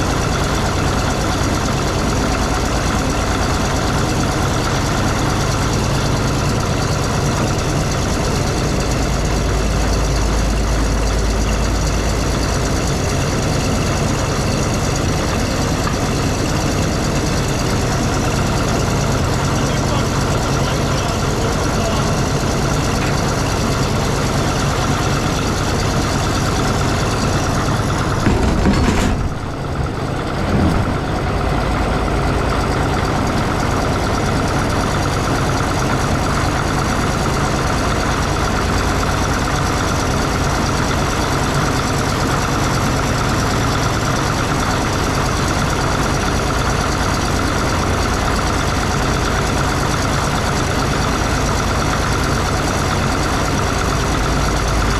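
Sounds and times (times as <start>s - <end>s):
heavy diesel engine idling: 0.0s - 54.9s.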